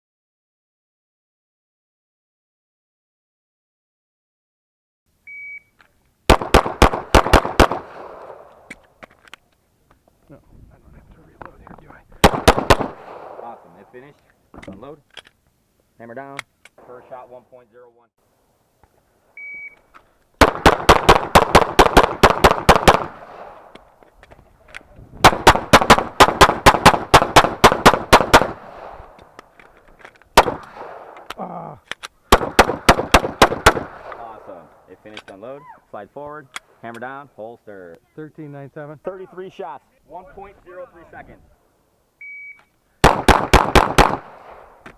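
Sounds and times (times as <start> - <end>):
shot timer beep: 5.3 - 5.7, 19.4 - 19.8, 42.2 - 42.7
pistol shots with echo: 6.3 - 8.7, 12.2 - 13.8, 20.4 - 23.7, 25.2 - 29.2, 30.4 - 31.3, 32.3 - 34.5, 43.0 - 44.8.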